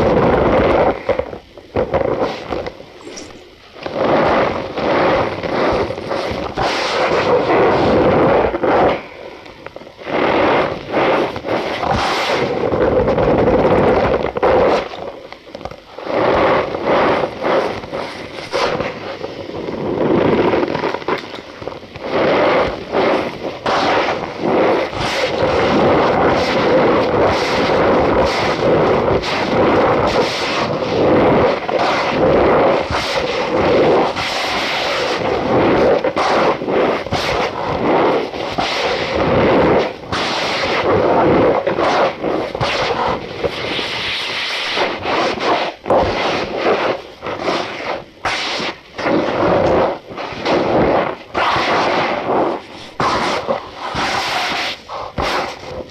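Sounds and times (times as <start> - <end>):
cornstarch powder squeaking: 2.9 - 3.6.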